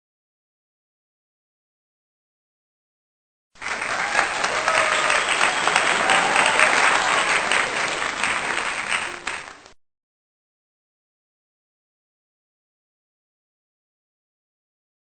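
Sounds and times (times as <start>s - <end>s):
crowd applause: 3.6s - 9.8s
faint voices: 3.6s - 9.8s.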